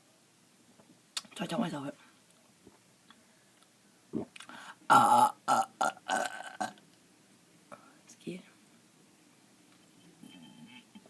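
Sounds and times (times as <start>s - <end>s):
person burping: 4.2s - 6.8s.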